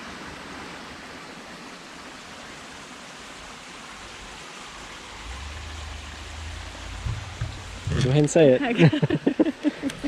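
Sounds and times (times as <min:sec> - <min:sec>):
mountain stream rushing: 0:00.0 - 0:10.0
low rumble: 0:05.1 - 0:08.5.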